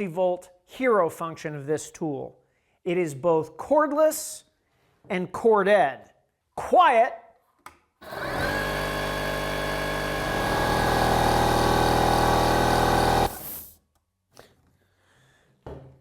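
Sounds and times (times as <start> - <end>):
air compressor running: 8.0 - 13.7.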